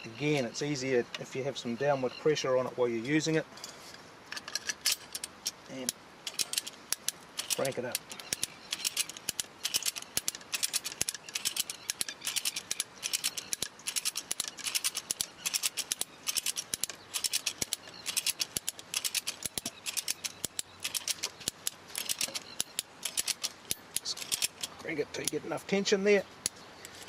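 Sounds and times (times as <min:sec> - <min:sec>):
ratchet clicking: 0:04.9 - 0:25.4.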